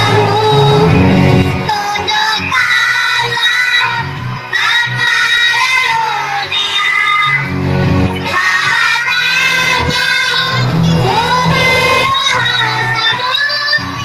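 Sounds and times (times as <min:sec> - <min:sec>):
children's choir singing: 0:00.0 - 0:07.5, 0:08.2 - 0:14.0
backing track music: 0:00.0 - 0:14.0.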